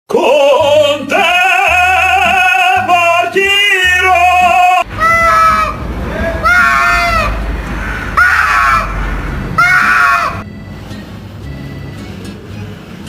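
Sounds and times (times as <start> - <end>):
person singing with vibrato: 0.1 - 4.9
pulsing bass line: 3.9 - 11.5
drawn-out call: 4.9 - 10.4.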